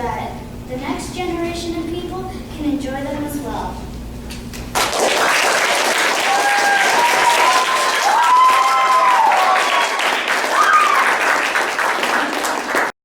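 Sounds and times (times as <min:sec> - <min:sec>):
audience applauding: 0:04.7 - 0:13.0.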